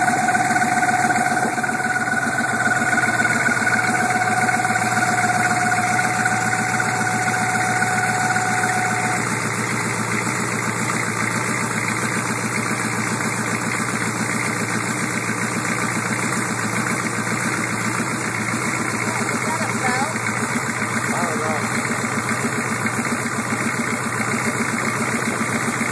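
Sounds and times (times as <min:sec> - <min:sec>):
high whine: 0:00.0 - 0:09.5
diesel engine idling: 0:00.0 - 0:25.9.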